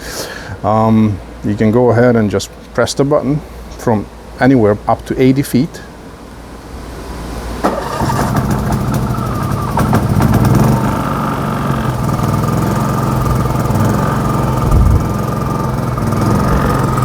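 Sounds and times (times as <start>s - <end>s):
generator engine running: 7.6s - 17.0s.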